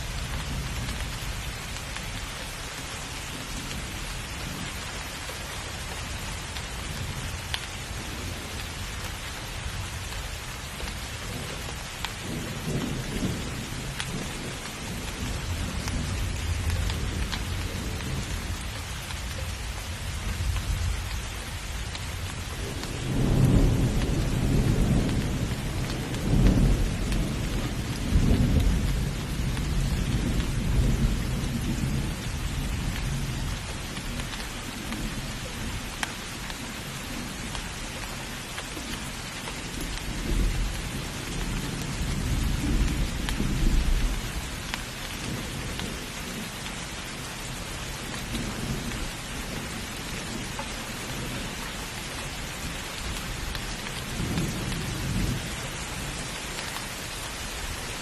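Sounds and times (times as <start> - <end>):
heavy rain hissing: 0.0 - 58.0
low rolling thunder: 19.3 - 35.8, 39.6 - 44.6.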